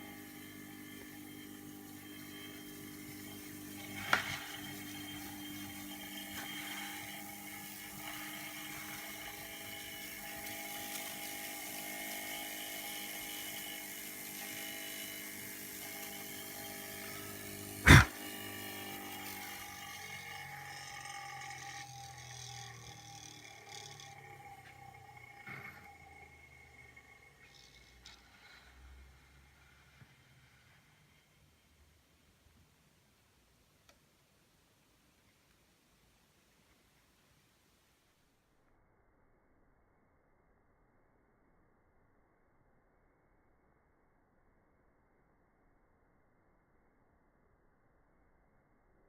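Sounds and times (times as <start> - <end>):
spinning ball whirring whine: 0.0 - 18.2, 19.0 - 28.3
steam hissing from jets: 17.0 - 18.2.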